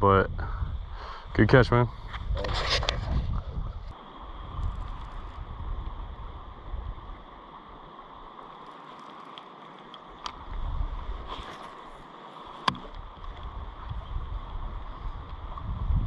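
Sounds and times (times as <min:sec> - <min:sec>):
wind buffeting microphone: 0:00.0 - 0:07.3, 0:10.2 - 0:11.6, 0:12.7 - 0:16.0
river water flowing: 0:03.9 - 0:15.7.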